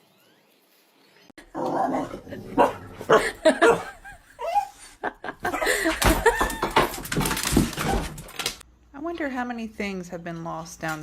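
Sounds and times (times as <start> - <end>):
person laughing: 2.3 - 7.0.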